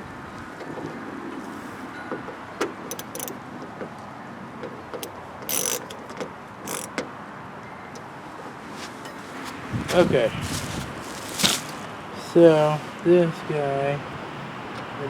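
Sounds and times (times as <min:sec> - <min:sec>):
short scrapes: 0:08.6 - 0:11.9.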